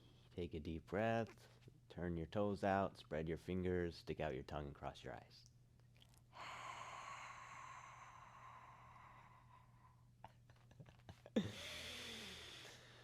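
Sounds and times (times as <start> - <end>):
person exhaling breathily: 6.4 - 10.0, 11.4 - 13.0.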